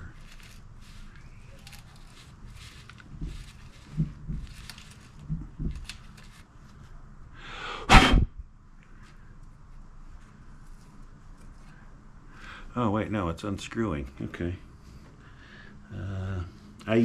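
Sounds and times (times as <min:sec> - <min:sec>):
loud brief rushing noise: 0:07.9 - 0:08.4.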